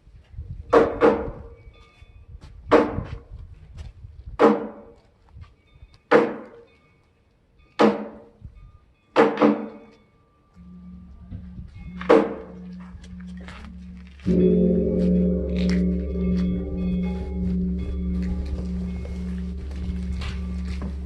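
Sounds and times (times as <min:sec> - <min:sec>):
sharp struck knocks with resonant ring: 0:09.2 - 0:09.8, 0:10.6 - 0:21.0.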